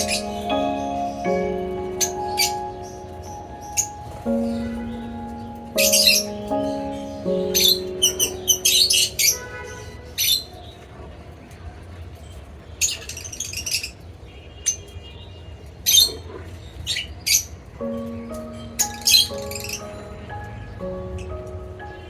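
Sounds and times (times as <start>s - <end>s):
background music: 0.0s - 9.7s, 17.8s - 22.0s
lovebirds squawking and chirping: 0.0s - 10.6s.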